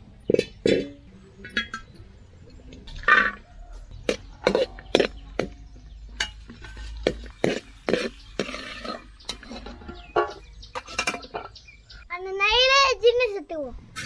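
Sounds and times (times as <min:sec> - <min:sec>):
metal spoon scraping a pan: 0:00.3 - 0:02.0, 0:02.9 - 0:05.6, 0:06.2 - 0:11.6.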